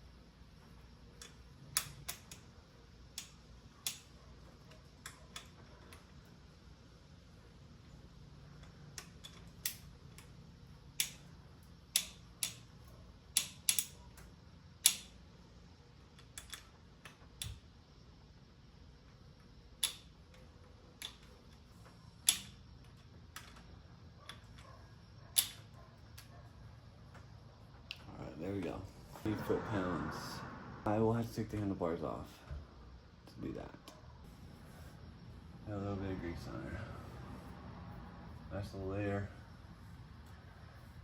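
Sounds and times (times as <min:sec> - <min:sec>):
wrench clicking on bolts: 0:01.2 - 0:02.5, 0:08.5 - 0:15.2, 0:19.8 - 0:20.4, 0:22.2 - 0:24.7, 0:25.3 - 0:26.3.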